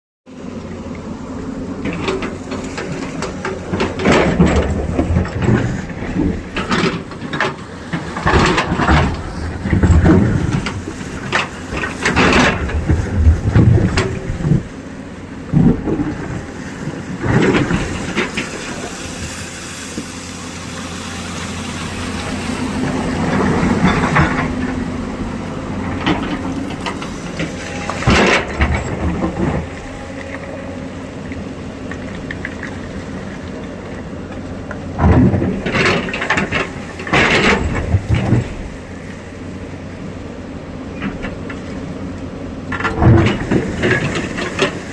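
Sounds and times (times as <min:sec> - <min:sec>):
excavator engine running: 0:00.3 - 0:44.9
loud clanks and knocks: 0:01.8 - 0:14.7, 0:17.2 - 0:18.7, 0:22.8 - 0:24.9, 0:25.8 - 0:30.3, 0:35.0 - 0:38.8, 0:42.7 - 0:44.8.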